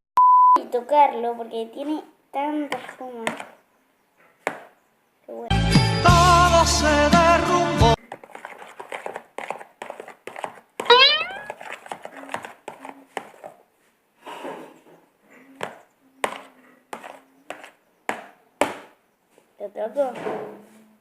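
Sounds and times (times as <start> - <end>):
short gliding squeal: 10.9 - 11.5.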